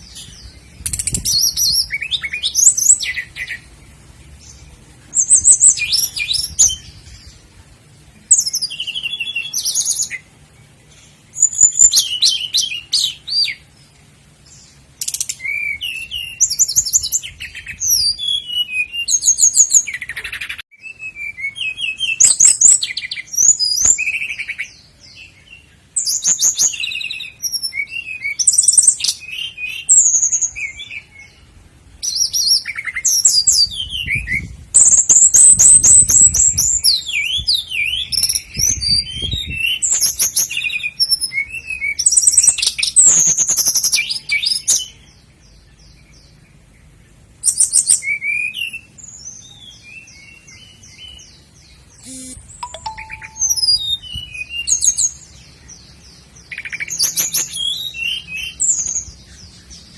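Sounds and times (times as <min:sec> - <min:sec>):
nightingale singing: 0:00.0 - 0:59.9.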